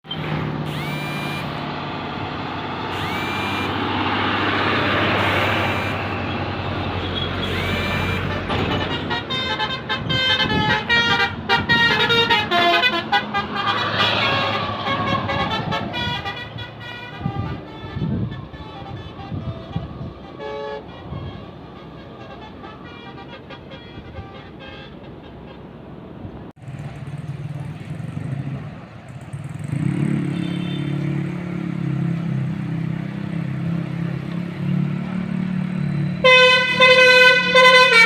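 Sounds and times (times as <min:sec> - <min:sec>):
bus engine humming: 0:00.1 - 0:29.6
short rising tones: 0:00.2 - 0:01.7, 0:02.8 - 0:06.4, 0:07.3 - 0:08.4
musical bus horn tune: 0:02.8 - 0:25.7, 0:30.3 - 0:30.9, 0:36.2 - 0:38.0.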